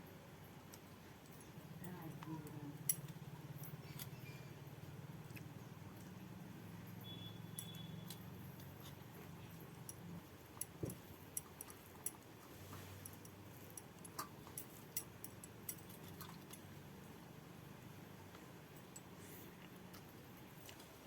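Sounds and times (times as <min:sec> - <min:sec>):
low steady hum: 0:00.0 - 0:21.0
chewing: 0:15.7 - 0:16.8, 0:19.0 - 0:21.0.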